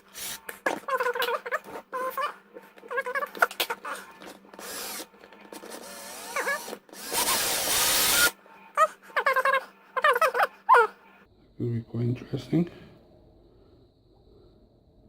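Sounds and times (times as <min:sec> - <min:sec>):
power drill boring into plastic: 0:04.6 - 0:08.3.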